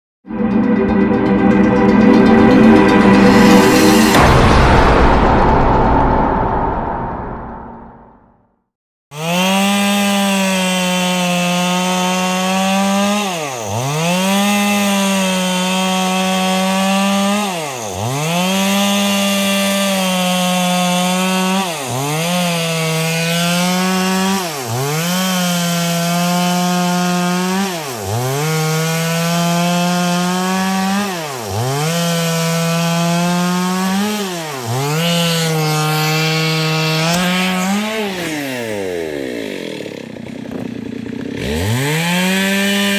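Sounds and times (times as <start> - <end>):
chainsaw cutting wood: 9.1 - 42.9.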